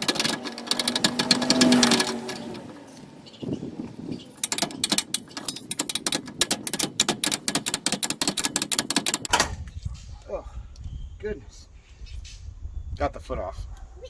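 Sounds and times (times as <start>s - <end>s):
socket ratchet clicking: 0.0s - 2.6s, 4.3s - 9.5s.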